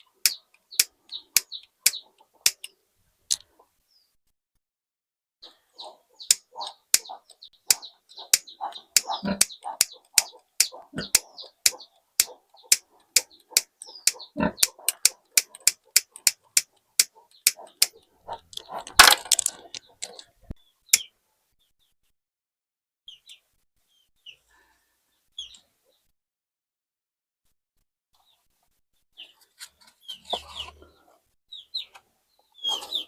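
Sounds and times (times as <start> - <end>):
sharp clicks: 0.0 - 3.5, 6.2 - 20.3.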